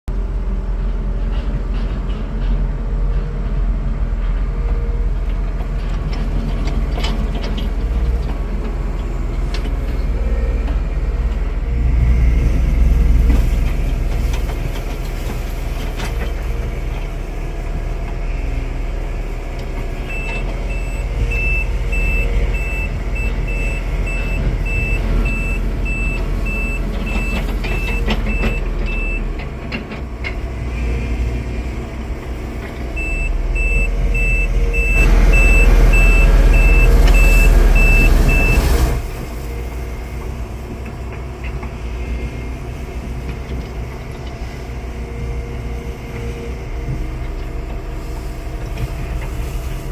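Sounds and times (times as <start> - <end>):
diesel machinery rumbling: 0.1 - 49.9
reversing alarm beeping: 20.1 - 29.3, 33.0 - 38.8.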